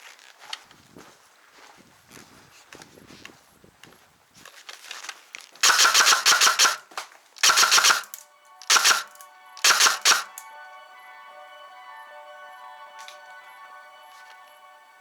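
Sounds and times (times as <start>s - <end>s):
airsoft rifle full-auto bursts: 5.6s - 10.4s
background music with steady tones: 5.6s - 15.0s.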